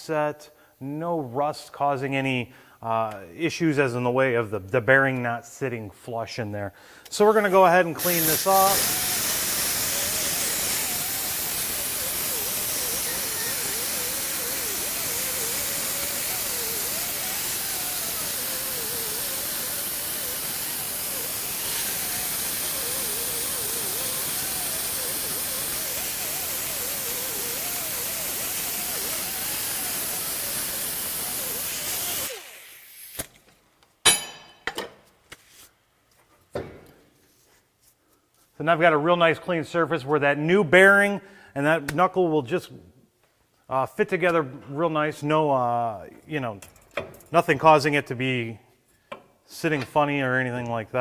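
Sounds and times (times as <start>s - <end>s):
air tool hissing and whining: 7.0s - 33.4s
sharp metal knocks: 34.0s - 35.0s.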